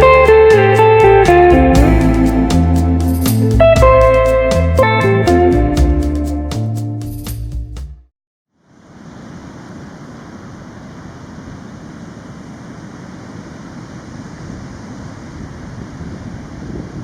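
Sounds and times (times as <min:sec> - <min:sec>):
ocean surf rushing on beach: 0:08.6 - 0:17.0
wind blowing on microphone: 0:09.0 - 0:17.0.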